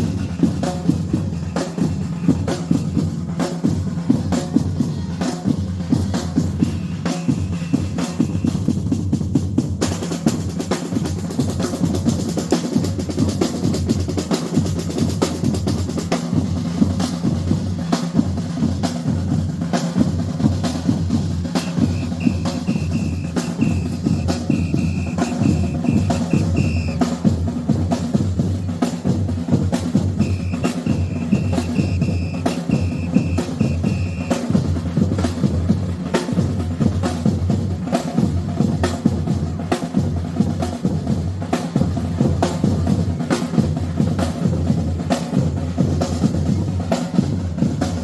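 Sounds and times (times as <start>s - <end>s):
rapid snare strokes: 21.5s - 27.1s, 30.1s - 34.6s
high steady tone: 21.6s - 27.1s, 30.2s - 34.4s.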